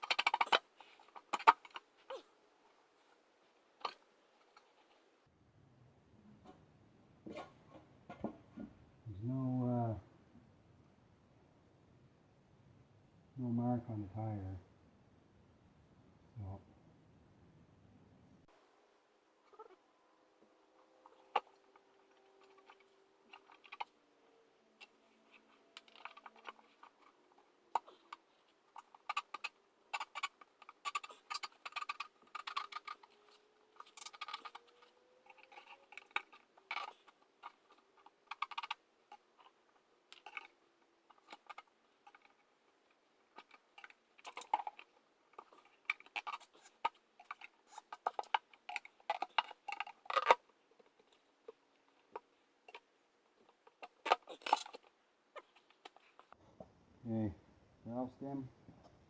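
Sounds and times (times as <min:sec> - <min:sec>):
tools clicking and scraping: 0:00.0 - 0:02.2, 0:24.7 - 0:56.4.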